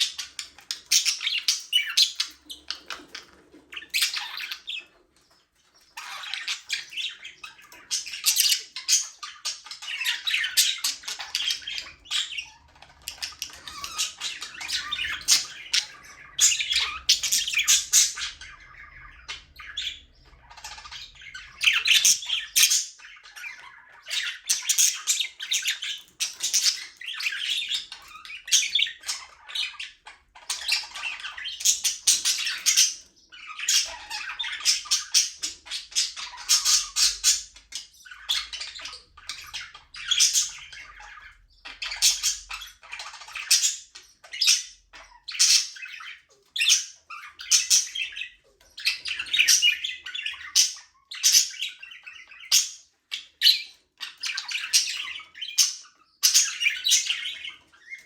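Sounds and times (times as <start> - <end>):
budgerigars chattering and chirping: 0.0 - 58.0.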